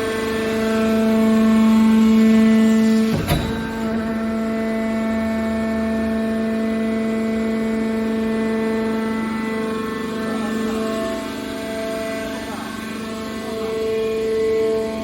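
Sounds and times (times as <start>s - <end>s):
machine droning: 0.4s - 10.0s
brief knock: 3.1s - 4.6s.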